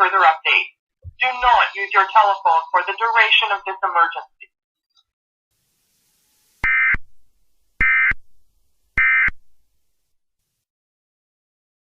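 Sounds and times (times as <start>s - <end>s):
digital data tone bursts: 6.6s - 7.0s.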